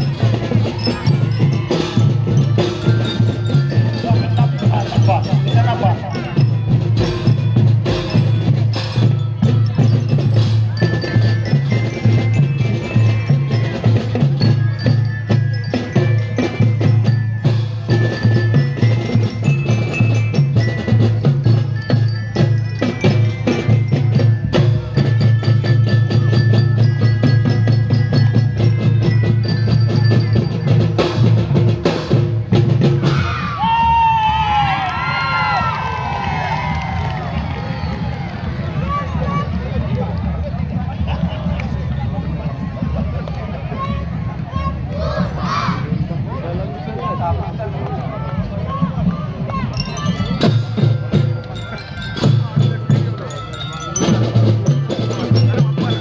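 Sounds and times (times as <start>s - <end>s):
glockenspiel melody: 0.0s - 32.6s, 49.5s - 56.0s
fast drumming: 0.0s - 35.6s, 49.2s - 56.0s.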